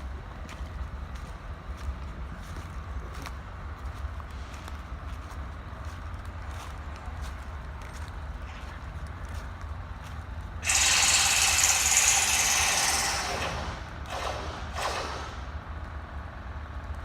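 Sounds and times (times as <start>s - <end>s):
train rumbling past: 0.0s - 17.0s
wheels clicking over rail joints: 0.0s - 17.0s
loud rushing noise: 10.6s - 15.6s.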